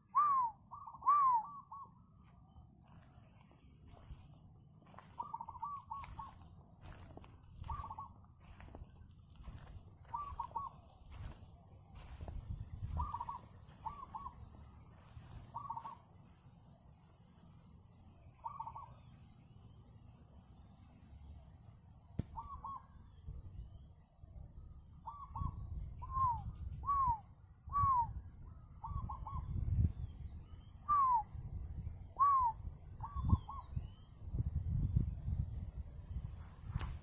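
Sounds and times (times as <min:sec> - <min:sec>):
dove cooing: 0:00.0 - 0:02.1, 0:04.8 - 0:16.0, 0:18.4 - 0:19.0, 0:22.4 - 0:23.0, 0:25.0 - 0:29.5, 0:32.2 - 0:33.7.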